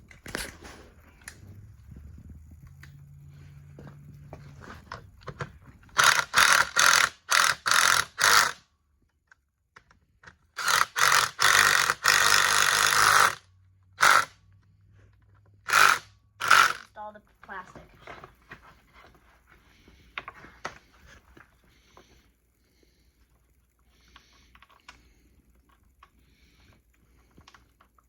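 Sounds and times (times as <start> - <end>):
socket ratchet wrench ratcheting: 6.0 - 8.7, 10.6 - 13.4, 14.0 - 14.4, 15.7 - 16.9.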